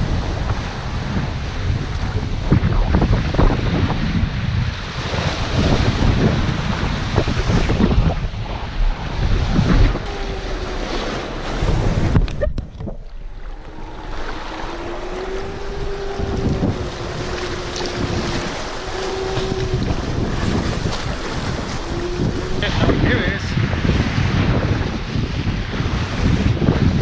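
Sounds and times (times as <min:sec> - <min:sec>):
water rushing along hulls: 0:00.0 - 0:27.0
wind buffeting microphone: 0:00.0 - 0:27.0
faint steady whine: 0:10.1 - 0:23.0.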